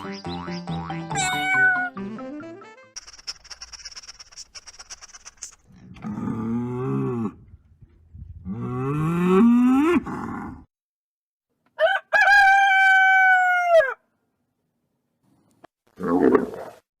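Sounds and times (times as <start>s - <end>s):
rooster crowing: 11.8s - 14.0s.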